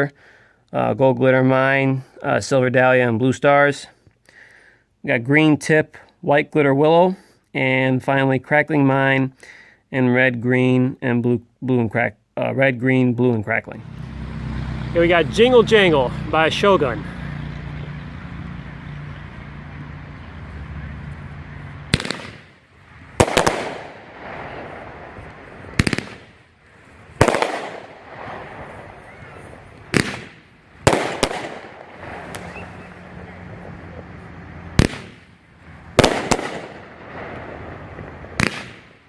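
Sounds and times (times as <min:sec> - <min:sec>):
fireworks cake firing shots: 0:21.9 - 0:22.6, 0:23.2 - 0:26.4, 0:27.2 - 0:32.6, 0:34.8 - 0:35.3, 0:36.0 - 0:39.0.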